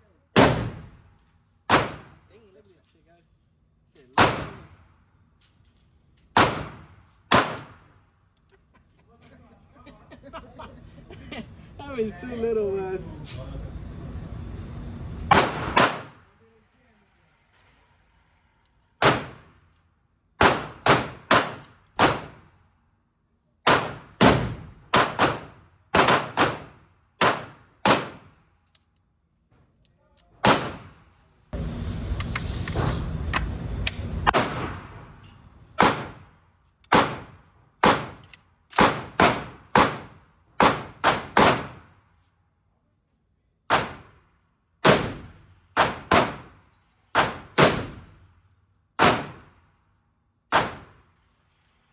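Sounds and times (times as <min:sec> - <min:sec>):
gunshots echoing indoors: 0:00.4 - 0:01.1, 0:01.7 - 0:02.3, 0:04.2 - 0:05.0, 0:06.3 - 0:08.1, 0:15.3 - 0:16.3, 0:19.0 - 0:19.5, 0:20.4 - 0:22.6, 0:23.6 - 0:28.3, 0:30.4 - 0:31.2, 0:34.2 - 0:42.0, 0:43.7 - 0:46.5, 0:47.2 - 0:48.2, 0:49.0 - 0:49.7, 0:50.5 - 0:51.1
dense continuous loud noise: 0:09.1 - 0:17.3.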